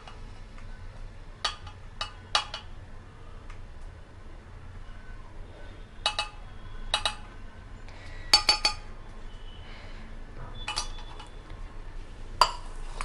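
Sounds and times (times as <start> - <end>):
metal utensils clinking on a pan: 6.0 - 7.2, 10.7 - 11.3.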